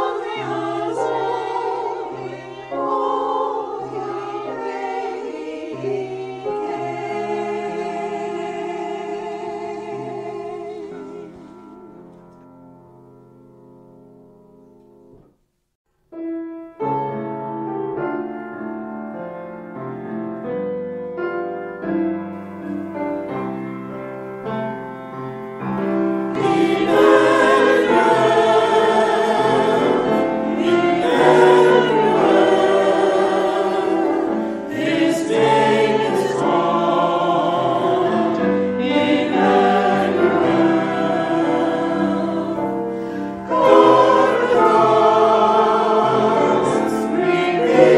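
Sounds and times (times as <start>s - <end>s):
choir singing sacred music: 0.0s - 12.5s, 24.4s - 47.9s
instrumental accompaniment: 16.1s - 47.9s.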